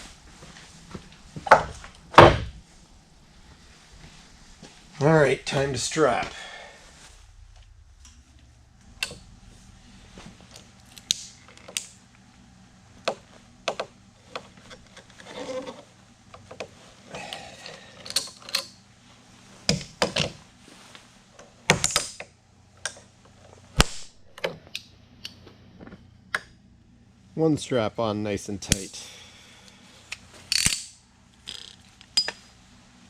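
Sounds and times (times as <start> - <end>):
strap scraping: 14.2 - 17.3.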